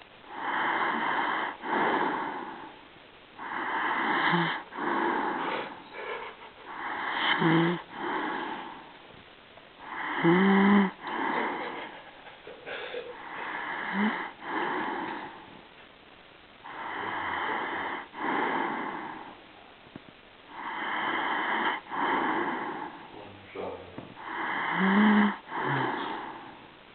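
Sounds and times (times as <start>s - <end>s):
person snoring: 0.3s - 2.8s, 3.4s - 8.9s, 9.8s - 12.0s, 12.7s - 15.6s, 16.6s - 19.4s, 20.5s - 26.7s
short pitched snort: 20.6s - 26.4s.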